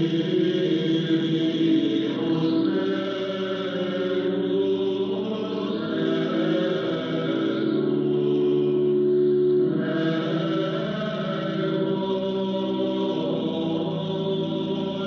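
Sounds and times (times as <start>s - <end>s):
choir singing chant-like music on radio: 0.0s - 15.0s.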